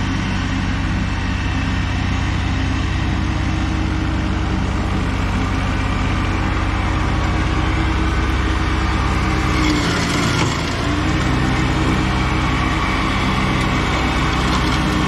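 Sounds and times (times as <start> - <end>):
tractor engine mowing: 0.0 - 15.0.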